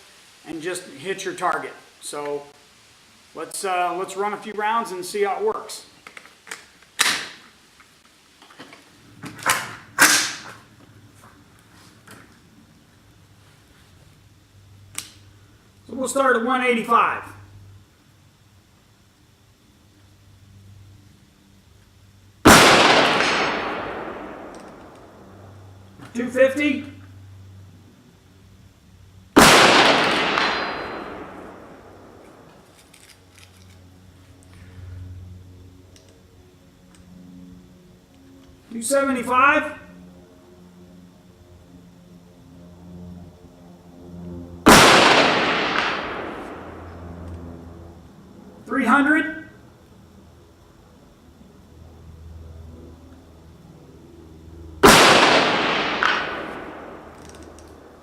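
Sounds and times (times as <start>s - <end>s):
rifle shot echoing: 22.5s - 25.2s, 29.4s - 32.5s, 44.7s - 46.9s, 54.8s - 57.3s
rifle mechanical clacks: 32.2s - 33.9s.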